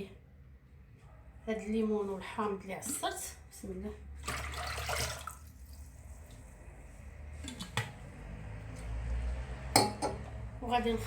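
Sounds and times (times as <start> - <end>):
juice trickling into a pot: 4.2 - 9.4.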